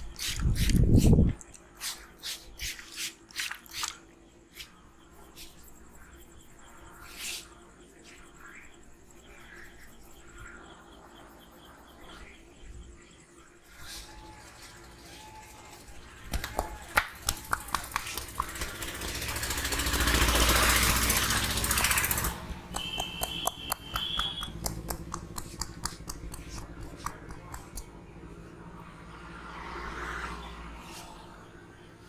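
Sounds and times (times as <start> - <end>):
sharp hand slaps: 16.3 - 18.7, 22.7 - 27.9.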